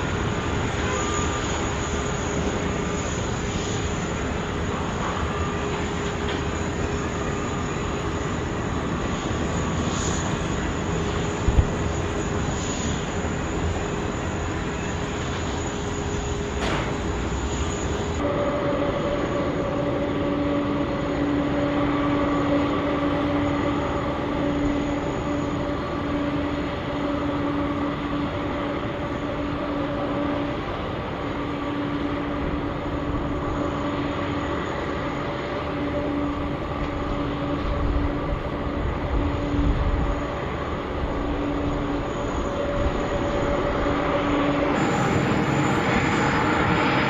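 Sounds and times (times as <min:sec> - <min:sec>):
heavy engine rumble: 0:44.7 - 0:47.0.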